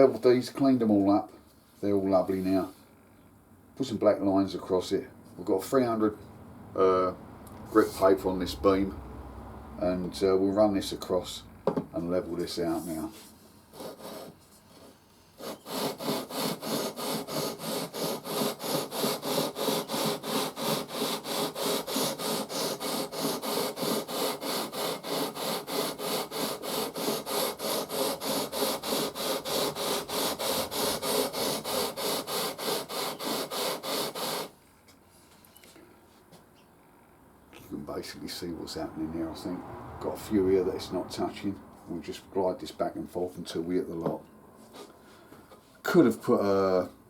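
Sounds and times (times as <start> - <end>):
sanding block scraping frets: 13.8 - 34.5.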